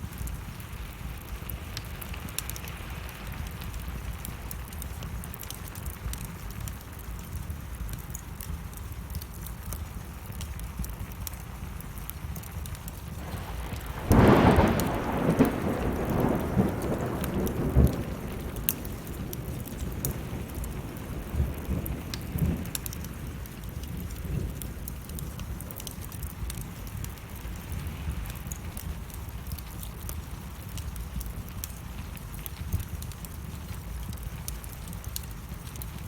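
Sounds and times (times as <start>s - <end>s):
steady rain: 0.0s - 36.0s
wood fire crackling: 0.0s - 36.0s
thunder rumbling: 13.2s - 29.2s.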